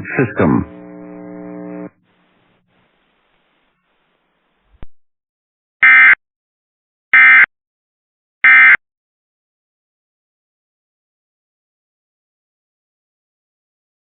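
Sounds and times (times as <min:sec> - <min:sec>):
buzzy digital data bursts: 0:00.7 - 0:02.0.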